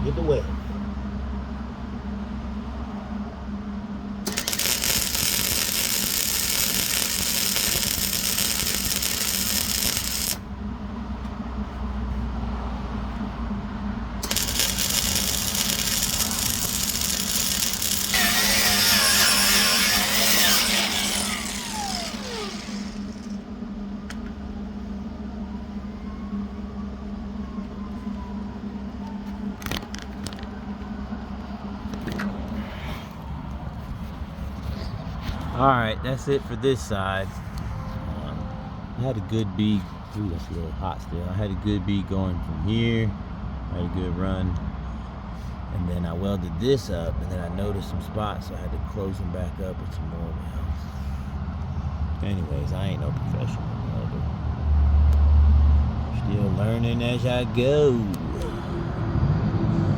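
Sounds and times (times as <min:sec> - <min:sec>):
low hum: 0:00.0 - 0:45.4
arc welding crackling hiss: 0:04.3 - 0:10.4, 0:14.2 - 0:23.4.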